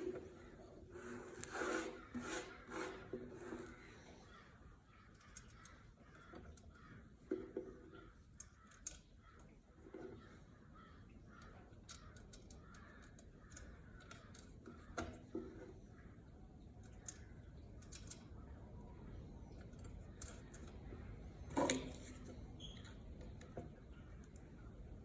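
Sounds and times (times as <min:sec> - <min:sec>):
crows cawing: 0:01.6 - 0:16.2.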